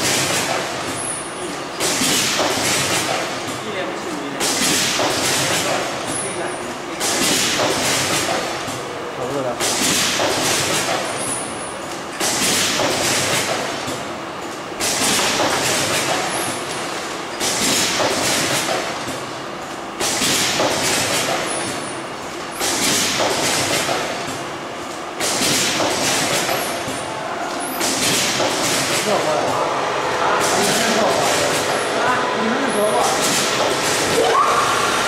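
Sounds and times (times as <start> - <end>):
packaging machine hissy rush: 4.3 - 8.6.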